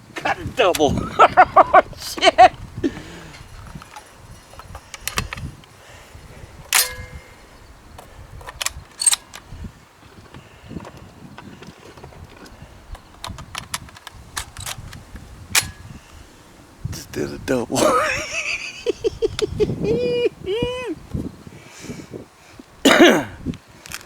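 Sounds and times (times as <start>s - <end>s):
sharp cracks and clicks: 3.5s - 5.8s, 6.7s - 9.5s, 12.9s - 15.8s
brief metallic ring: 6.8s - 7.4s.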